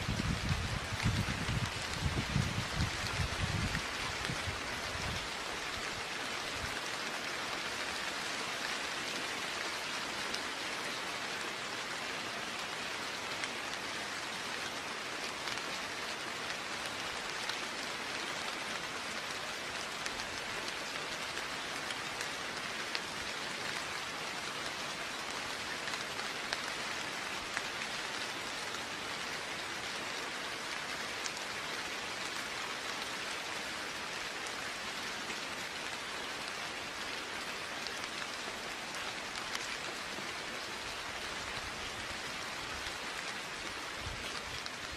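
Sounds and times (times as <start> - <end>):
steady rain falling: 0.0 - 44.9
rain drop ticks: 40.7 - 44.9.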